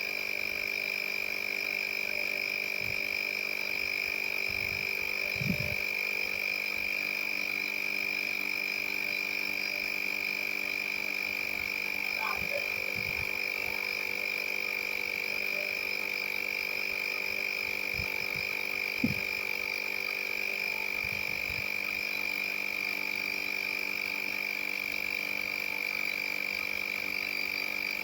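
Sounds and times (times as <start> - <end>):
high-pitched whine: 1.8 - 28.0.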